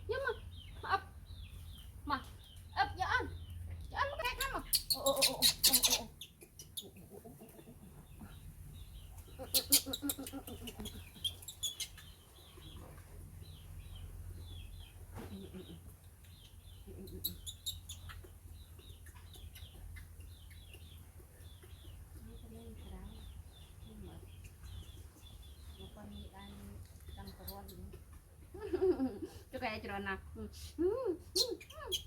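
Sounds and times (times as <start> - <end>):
high-pitched animal chirps: 4.3 - 7.1, 9.4 - 12.1, 17.1 - 18.3, 31.3 - 32.0.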